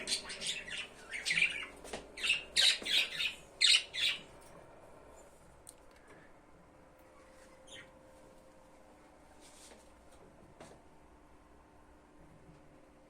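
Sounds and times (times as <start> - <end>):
budgerigars chattering: 0.0 - 4.2.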